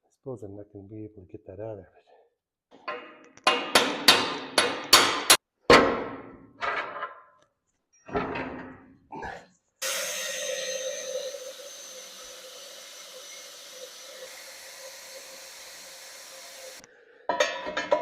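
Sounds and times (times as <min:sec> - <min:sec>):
hammer striking steel: 0:02.9 - 0:06.1.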